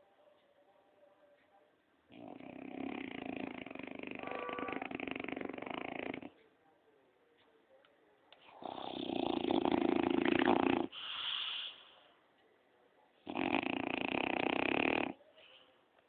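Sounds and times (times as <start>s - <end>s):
pet snoring loudly: 2.1s - 6.4s, 8.5s - 11.3s, 13.2s - 15.2s.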